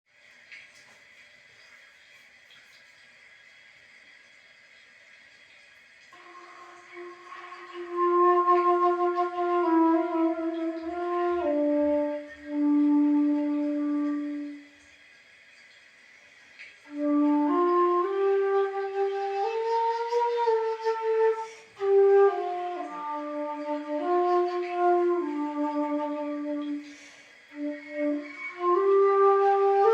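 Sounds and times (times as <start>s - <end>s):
bamboo flute slow melody: 6.2s - 14.9s, 16.8s - 29.9s.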